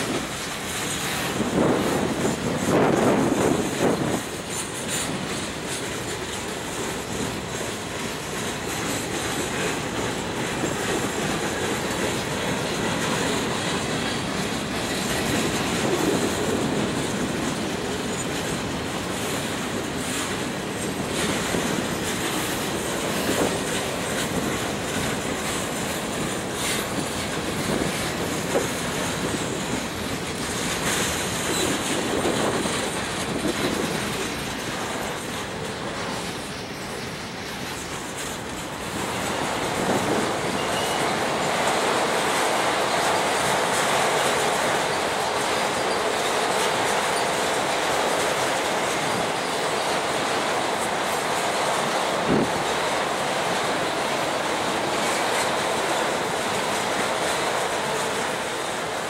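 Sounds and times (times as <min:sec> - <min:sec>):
train wheels clacking: 0:00.0 - 0:59.0
wheel squeal: 0:40.5 - 0:41.1.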